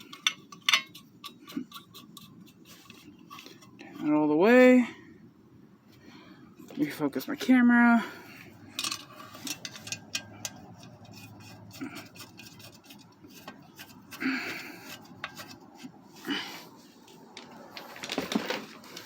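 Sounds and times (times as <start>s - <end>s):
rubbing scrapes: 0.9s - 4.1s, 10.8s - 19.0s.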